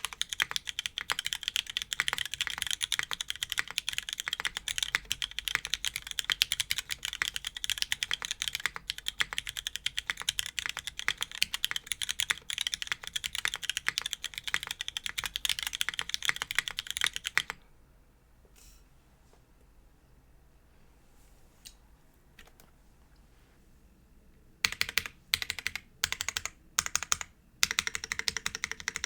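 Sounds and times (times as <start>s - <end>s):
fast typing on mechanical keyboard: 0.0s - 17.6s, 24.6s - 29.0s.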